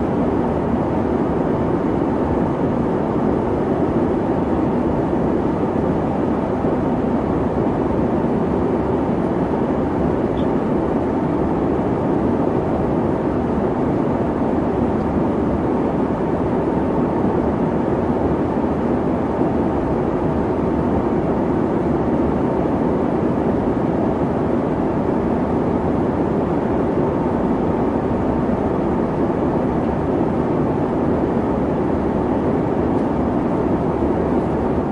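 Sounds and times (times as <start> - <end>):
jet engine and airflow rushing: 0.0 - 34.9.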